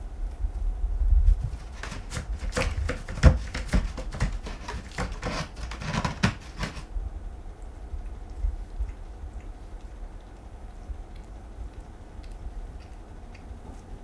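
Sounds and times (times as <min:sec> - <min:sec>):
cat claws scratching cardboard: 0:01.3 - 0:06.9.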